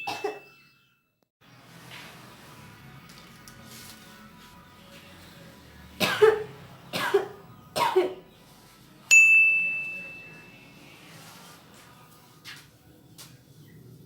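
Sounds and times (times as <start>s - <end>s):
person coughing: 0.0s - 0.5s, 6.0s - 8.2s
high bell-like ding: 0.0s - 1.2s, 9.1s - 10.7s.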